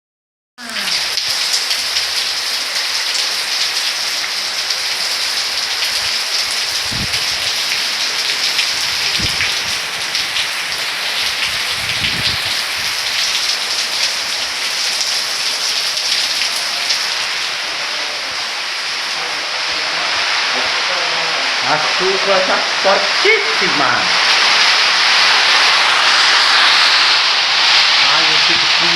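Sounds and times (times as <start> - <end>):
heavy rain pouring: 0.6 - 28.9.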